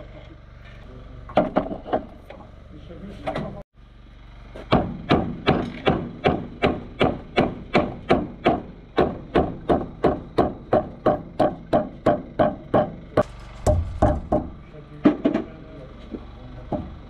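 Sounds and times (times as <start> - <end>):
hammer blows ringing: 11.0 - 15.4.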